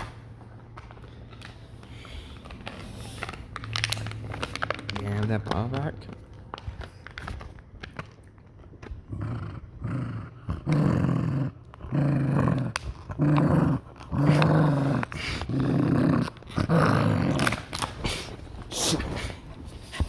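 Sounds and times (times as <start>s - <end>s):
dog growling: 8.8s - 20.0s.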